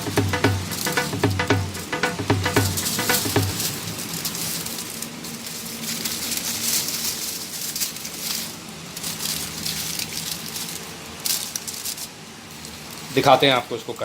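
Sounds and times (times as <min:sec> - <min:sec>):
aluminium foil crinkling: 0:02.0 - 0:14.0.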